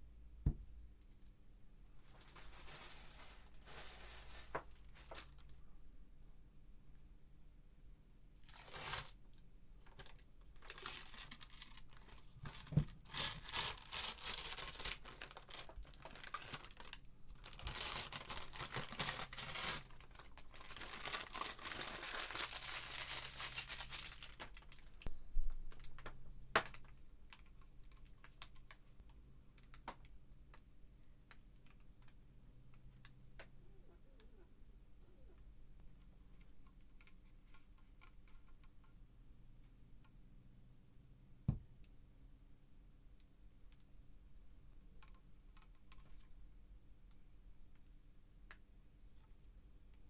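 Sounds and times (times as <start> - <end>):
packaging tearing and crinkling: 8.5 - 9.2, 9.8 - 25.1.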